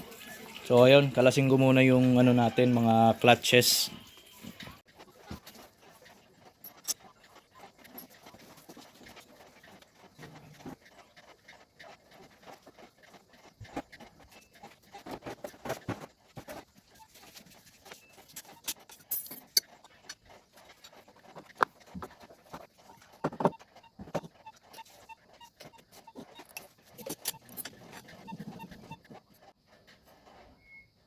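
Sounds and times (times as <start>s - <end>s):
metal parts clinking and knocking: 18.4s - 19.8s, 26.4s - 28.0s.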